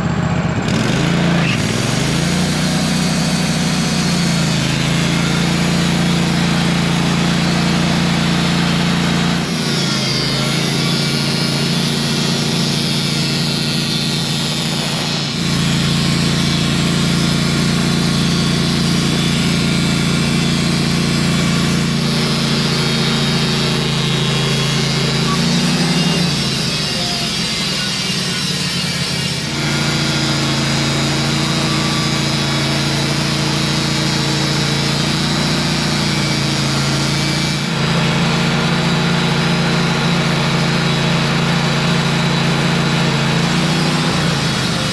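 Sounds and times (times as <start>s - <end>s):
band sawmill cutting log: 0.0s - 44.9s.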